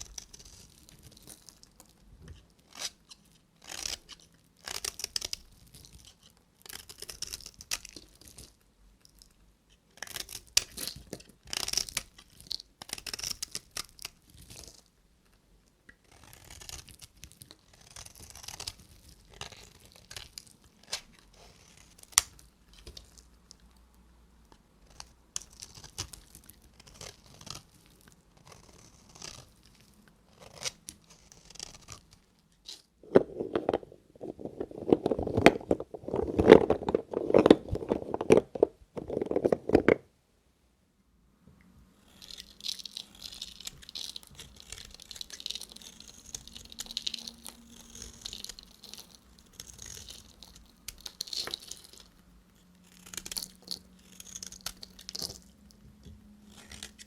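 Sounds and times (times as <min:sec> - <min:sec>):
knife cutting bar soap: 0:00.0 - 0:08.6, 0:15.9 - 0:23.6, 0:42.0 - 0:57.0.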